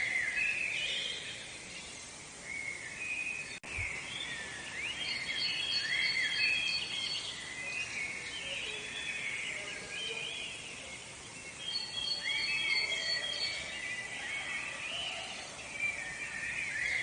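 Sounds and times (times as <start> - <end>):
faint background hiss: 0.0 - 17.0
woodland birds singing: 0.0 - 17.0.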